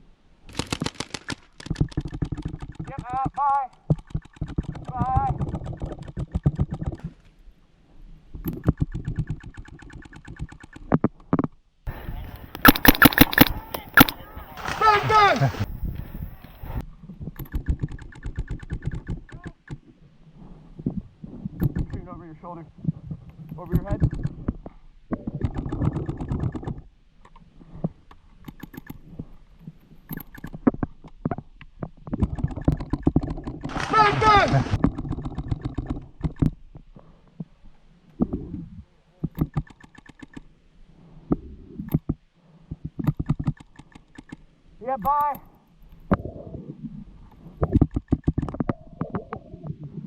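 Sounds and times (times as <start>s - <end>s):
paintball markers firing rapidly: 11.9s - 15.7s, 33.7s - 36.0s.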